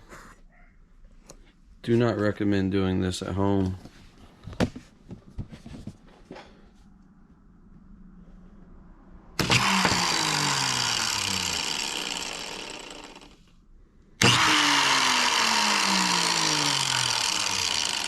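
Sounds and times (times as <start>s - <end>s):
angle grinder motor running: 9.4s - 13.5s, 14.2s - 18.0s.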